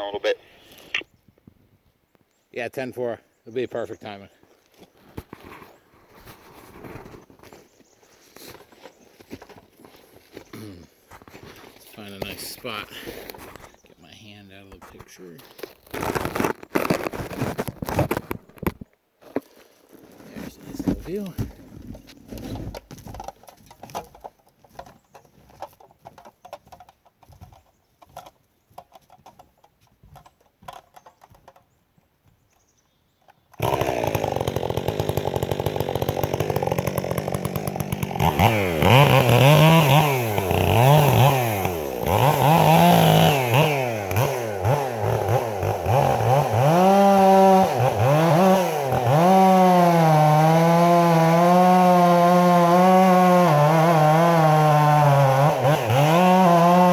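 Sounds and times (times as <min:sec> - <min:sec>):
chainsaw revving and cutting: 0:15.9 - 0:18.2, 0:33.6 - 0:56.9.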